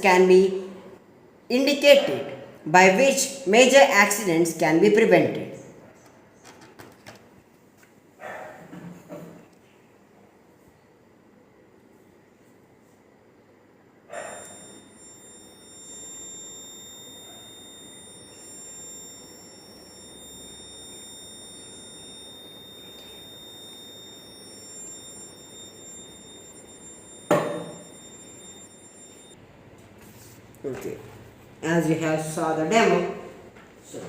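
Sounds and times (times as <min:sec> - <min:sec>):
alarm buzzer steady high tone: 0:14.1 - 0:29.4.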